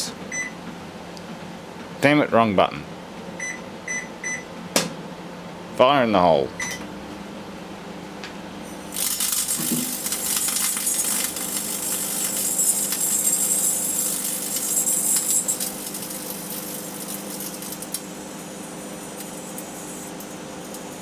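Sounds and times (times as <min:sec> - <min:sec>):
microwave oven humming: 0:00.0 - 0:21.0
electrical arcing crackling: 0:09.0 - 0:18.0.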